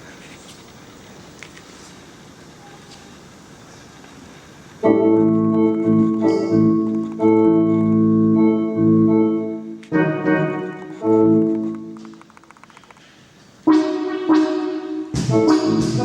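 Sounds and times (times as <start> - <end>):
organ chords on keyboard: 4.8 - 12.1, 13.6 - 16.0.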